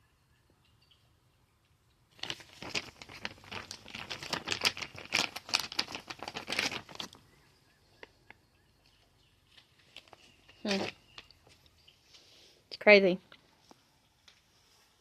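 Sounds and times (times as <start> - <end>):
rustling and crinkling handling: 2.1 - 12.4.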